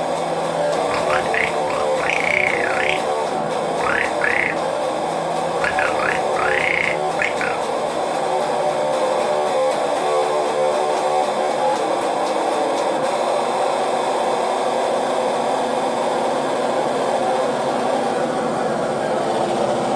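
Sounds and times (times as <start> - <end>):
music with ticking beat: 0.0 - 3.1, 3.8 - 4.8, 5.6 - 11.4.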